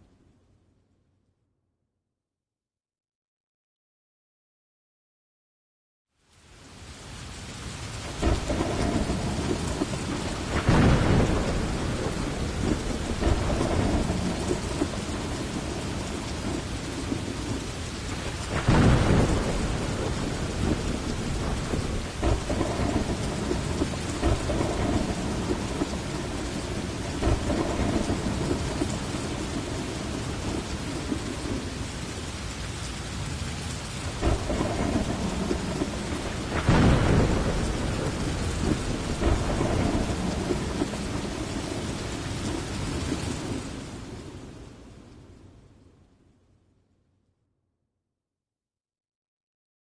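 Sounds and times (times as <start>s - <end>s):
heavy rain falling: 6.2s - 46.0s
rolling thunder: 8.0s - 32.6s, 33.2s - 44.8s.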